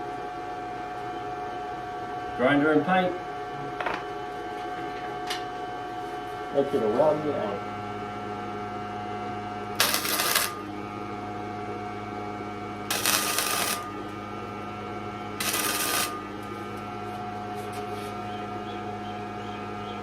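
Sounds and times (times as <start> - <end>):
electrical hum: 0.0 - 20.0
welder crackling: 9.8 - 10.7, 12.9 - 14.2, 15.4 - 16.8.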